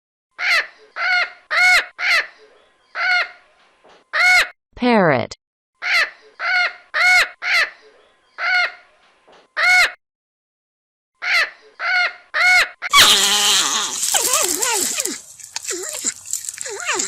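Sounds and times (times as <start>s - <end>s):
parrot squawking: 5.8s - 7.8s, 8.4s - 8.8s, 11.2s - 17.0s.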